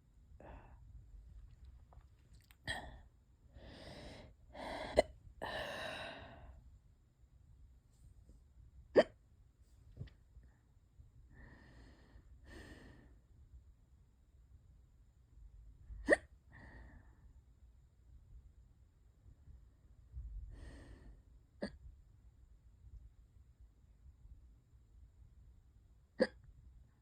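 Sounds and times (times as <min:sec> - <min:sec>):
person hiccupping: 0:26.2 - 0:26.5.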